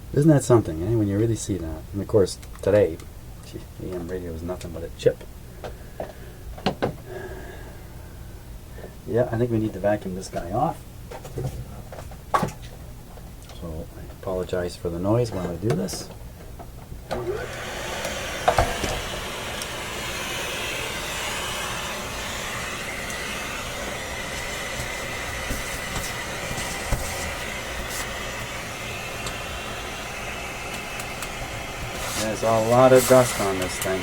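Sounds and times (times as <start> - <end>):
vacuum cleaner running: 17.1 - 34.0.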